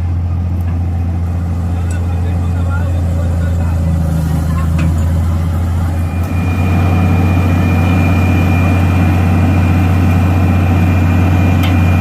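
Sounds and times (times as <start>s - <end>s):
diesel engine idling: 0.0s - 12.0s
thin high whine: 5.8s - 12.0s.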